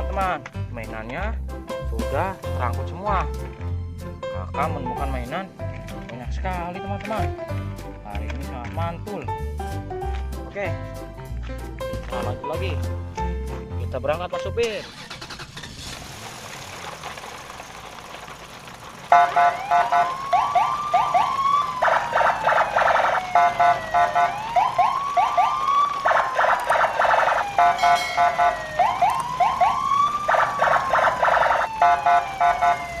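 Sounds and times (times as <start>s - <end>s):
electronic siren: 19.1s - 33.0s.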